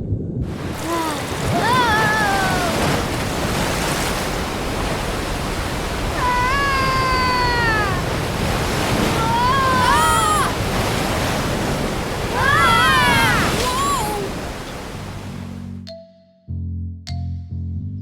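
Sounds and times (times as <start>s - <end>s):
drawn-out falling cries: 0.8s - 3.2s, 5.9s - 11.5s, 12.1s - 14.6s.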